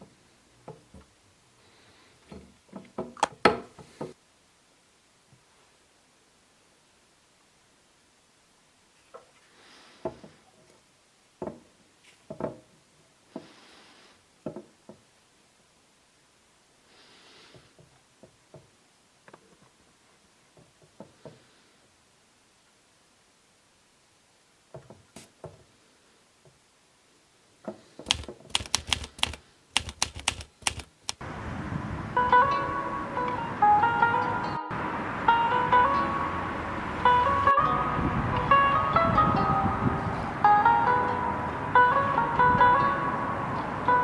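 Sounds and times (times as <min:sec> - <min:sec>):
sharp typing-like taps: 0:28.0 - 0:31.2
soft hisses: 0:31.2 - 0:44.0.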